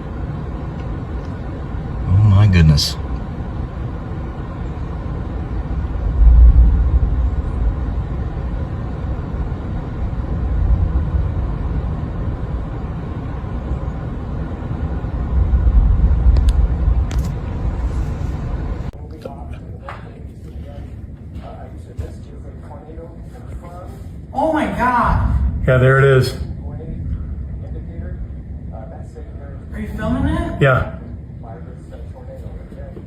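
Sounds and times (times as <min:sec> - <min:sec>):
wind buffeting microphone: 0:04.4 - 0:19.0.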